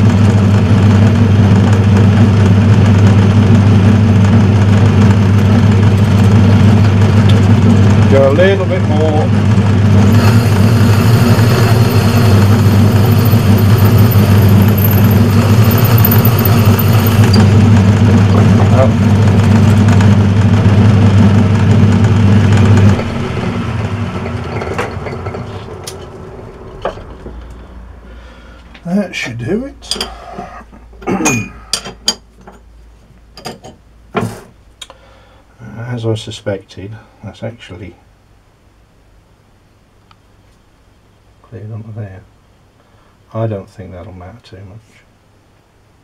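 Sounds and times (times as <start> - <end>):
metal lathe running: 0.2 - 27.2.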